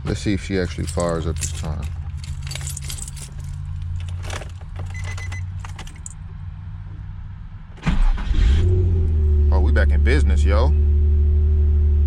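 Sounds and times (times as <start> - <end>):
car engine cranking and starting: 0.1 - 6.2, 7.8 - 9.2
keys jangling and clicking: 0.1 - 6.2.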